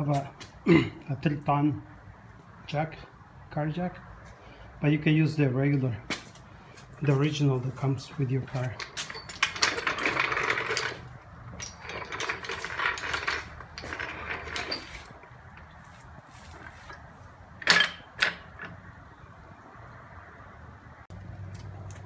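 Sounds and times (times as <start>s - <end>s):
metal tools clicking and rattling: 6.8s - 18.8s.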